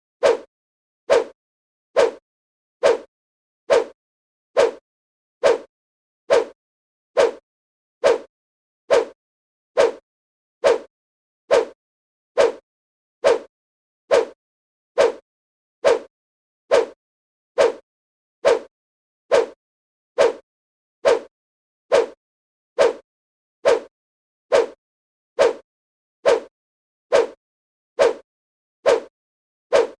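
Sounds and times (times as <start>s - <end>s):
fist swoosh through air: 0.2s - 0.5s, 1.1s - 1.4s, 2.0s - 2.2s, 2.8s - 3.1s, 3.7s - 4.0s, 4.6s - 4.8s, 5.4s - 5.7s, 6.3s - 6.6s, 7.2s - 7.4s, 8.0s - 8.3s, 8.9s - 9.2s, 9.8s - 10.0s, 10.6s - 10.9s, 11.5s - 11.8s, 12.4s - 12.6s, 13.2s - 13.5s, 15.0s - 15.2s, 15.8s - 16.1s, 16.7s - 17.0s, 17.6s - 17.8s, 18.4s - 18.7s, 19.3s - 19.6s, 20.2s - 20.4s, 21.0s - 21.3s, 21.9s - 22.2s, 22.8s - 23.0s, 23.6s - 23.9s, 24.5s - 24.8s, 25.4s - 25.6s, 26.2s - 26.5s, 27.1s - 27.4s, 28.0s - 28.2s, 28.8s - 29.1s, 29.7s - 30.0s.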